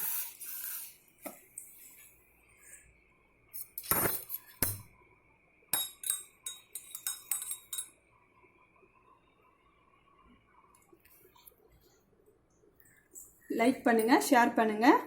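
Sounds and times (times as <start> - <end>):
cup clinking: 5.8 - 8.0.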